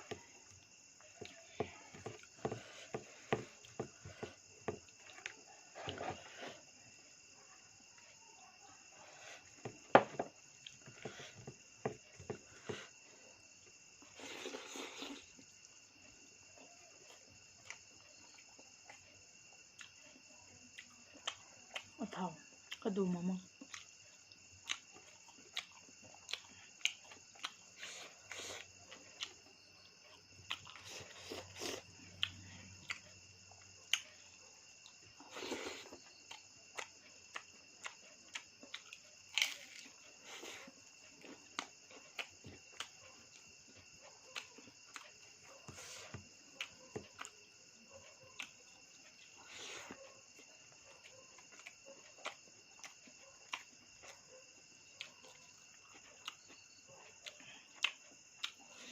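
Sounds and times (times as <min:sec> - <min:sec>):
chewing and lip smacks: 0:23.6 - 0:54.3, 0:54.9 - 0:58.9.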